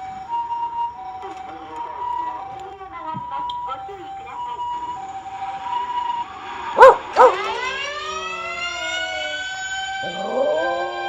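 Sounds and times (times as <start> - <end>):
siren whooping and wailing: 4.1 - 11.0.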